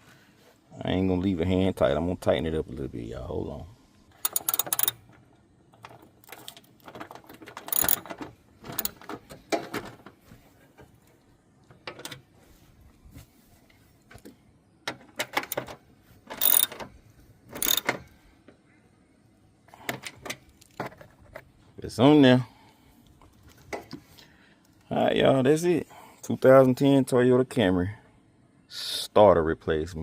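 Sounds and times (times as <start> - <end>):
socket ratchet clicking: 4.2 - 5.0, 7.6 - 9.0, 15.4 - 15.7, 16.3 - 16.8, 17.5 - 18.0.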